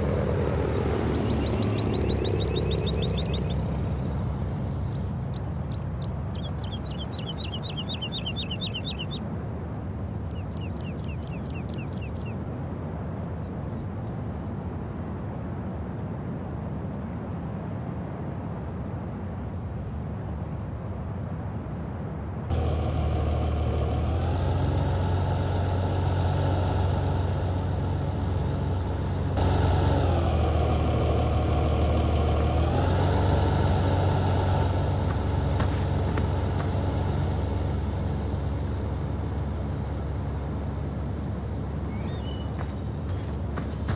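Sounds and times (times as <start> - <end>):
tractor diesel engine: 0.0 - 5.4, 22.5 - 42.6
bird chirping: 0.0 - 12.4, 41.8 - 43.9.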